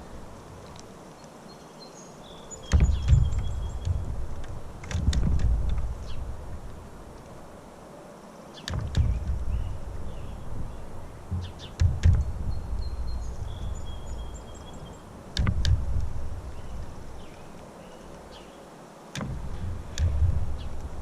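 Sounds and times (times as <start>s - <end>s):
faint bird chirps: 1.1s - 7.2s, 8.4s - 21.0s
wind rumble on microphone: 2.3s - 7.8s, 8.6s - 18.4s, 19.1s - 21.0s
sharp clicks: 2.7s - 7.4s, 15.3s - 18.2s, 19.2s - 21.0s.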